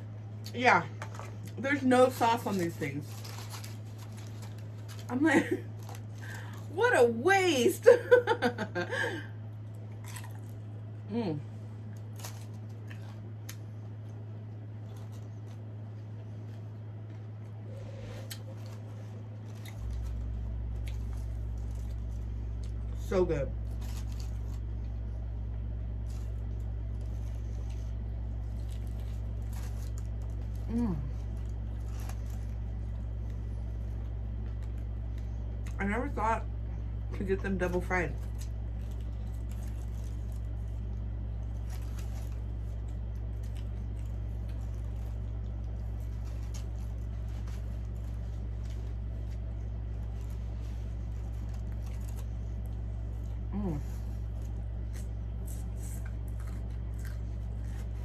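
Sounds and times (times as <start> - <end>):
steady low hum: 0.0 - 58.0
person chewing and smacking: 9.6 - 10.7, 18.2 - 22.8, 54.1 - 58.0
wet chewing: 9.6 - 10.8, 11.8 - 22.9, 38.2 - 58.0.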